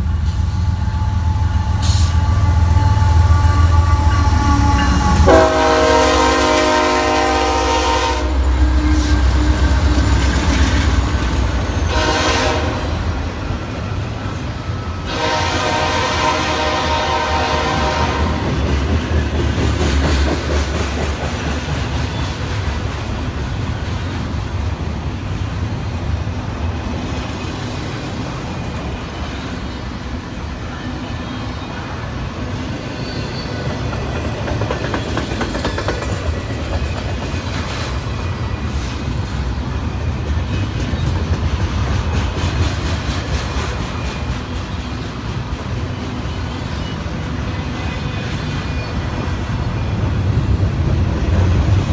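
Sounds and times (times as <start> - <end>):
deep train rumble: 0.0 - 51.9
train horn: 0.6 - 13.4, 15.0 - 18.6
train wheels clattering: 3.9 - 26.3, 32.5 - 51.9.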